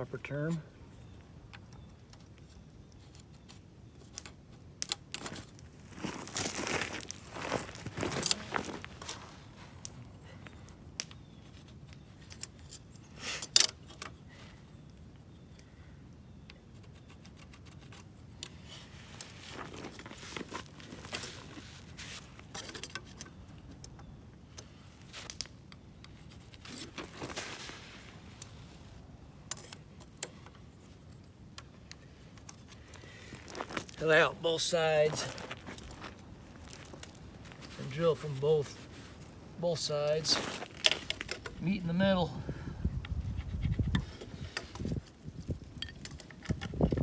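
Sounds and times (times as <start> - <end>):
hand tools clicking and scraping: 16.5 - 28.8, 29.4 - 41.6.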